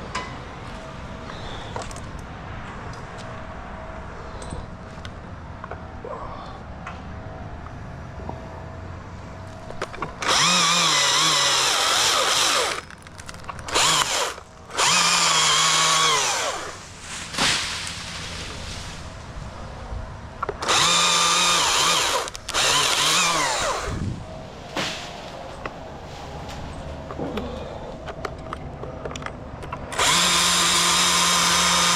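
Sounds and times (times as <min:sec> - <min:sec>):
chainsaw revving: 0:10.2 - 0:12.8, 0:13.7 - 0:16.8, 0:20.6 - 0:24.0, 0:29.9 - 0:31.9.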